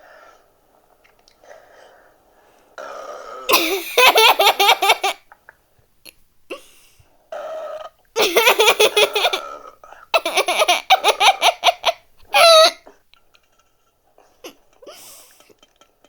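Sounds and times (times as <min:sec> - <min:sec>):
bursts of laughter: 0:03.5 - 0:05.2, 0:08.2 - 0:09.4, 0:10.2 - 0:12.8.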